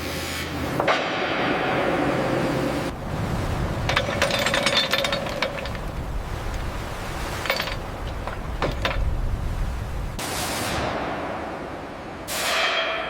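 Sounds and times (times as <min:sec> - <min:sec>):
steady low rumble: 0:01.3 - 0:10.2.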